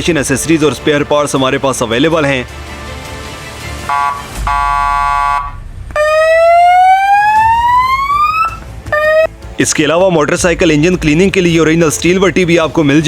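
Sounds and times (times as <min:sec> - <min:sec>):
electronic police siren: 0:03.9 - 0:09.3.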